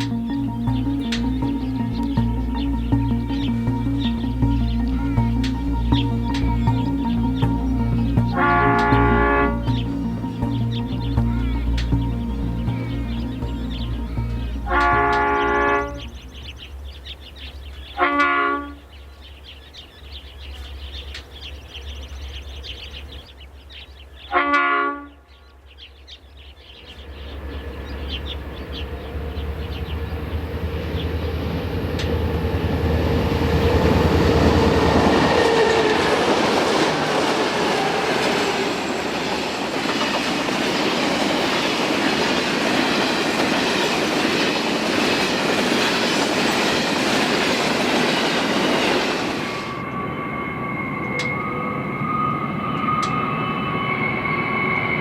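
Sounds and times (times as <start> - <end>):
train horn blast: 4.0 - 16.6, 18.0 - 18.8, 24.3 - 25.1
train wheels rumbling and clattering: 27.2 - 49.9.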